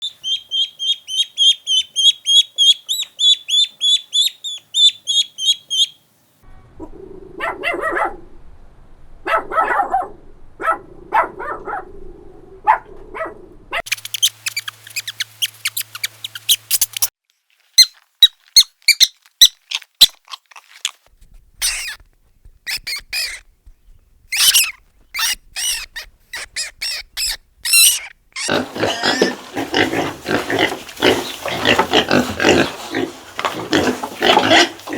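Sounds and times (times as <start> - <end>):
high squeaky chirps: 0.0 - 6.0, 13.8 - 17.1, 17.8 - 20.2, 21.6 - 29.4
sharp short calls and clicks: 13.9 - 17.1, 24.3 - 28.6.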